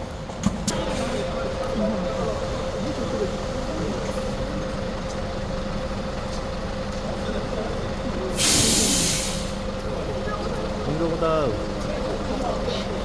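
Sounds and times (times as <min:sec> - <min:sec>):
bus engine idling: 0:00.0 - 0:13.0
compressed air hiss: 0:08.4 - 0:09.6.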